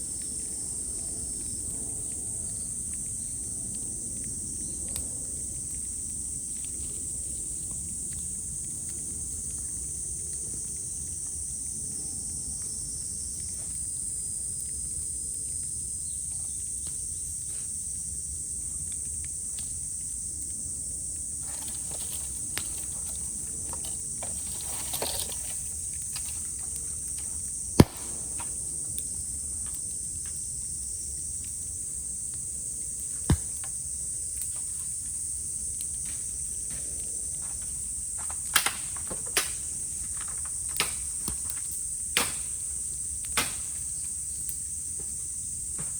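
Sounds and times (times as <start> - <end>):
cicadas buzzing: 0.0 - 45.9
bamboo popping in bonfire: 21.4 - 30.4, 38.2 - 44.6.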